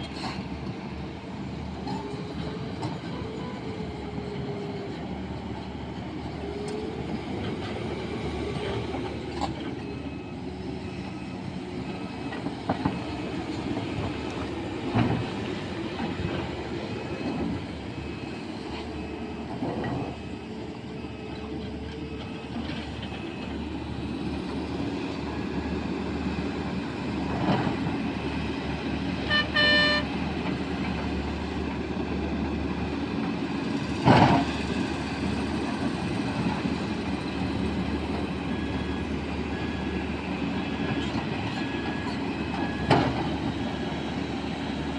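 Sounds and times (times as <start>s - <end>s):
excavator diesel engine running: 0.0s - 44.9s
short horn toot: 29.3s - 30.1s.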